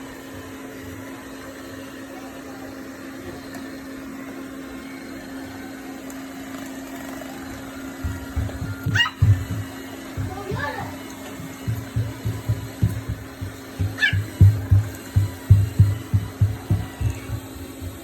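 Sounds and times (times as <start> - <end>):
robot vacuum cleaner whirring: 0.0 - 18.0
low thumps: 8.1 - 18.0.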